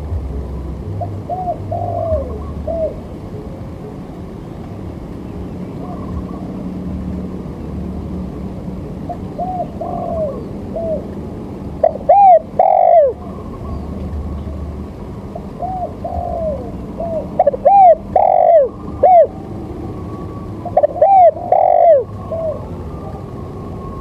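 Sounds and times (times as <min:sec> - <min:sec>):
low background hum: 0:00.0 - 0:24.0
bird calling: 0:05.7 - 0:06.6, 0:09.1 - 0:11.1, 0:11.8 - 0:14.1, 0:15.3 - 0:19.3, 0:20.6 - 0:22.7.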